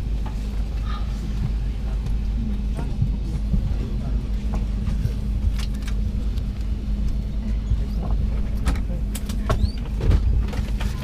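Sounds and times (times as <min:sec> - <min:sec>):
airliner cabin ventilation hum: 0:00.0 - 0:11.0.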